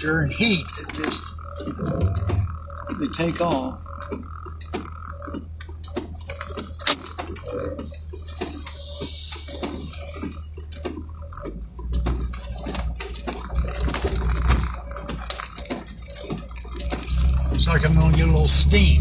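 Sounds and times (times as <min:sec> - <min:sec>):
vehicle low running hum: 0:00.0 - 0:19.0
raindrops on vehicle roof: 0:10.8 - 0:19.0.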